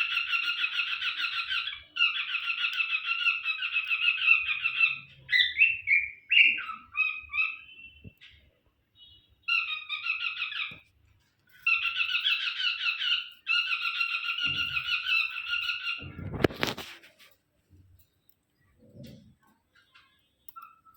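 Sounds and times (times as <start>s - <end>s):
cockatiel chirping: 0.0s - 8.4s, 9.0s - 10.8s, 11.6s - 16.8s
whistled bird calls: 0.1s - 8.4s.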